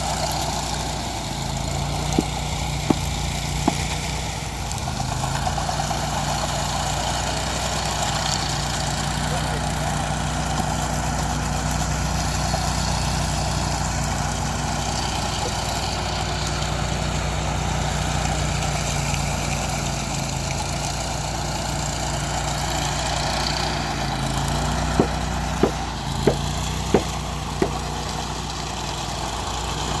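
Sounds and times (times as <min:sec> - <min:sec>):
power trowel engine running: 0:00.0 - 0:19.2, 0:19.8 - 0:30.0
sharp knocks: 0:02.0 - 0:04.0, 0:25.0 - 0:28.0.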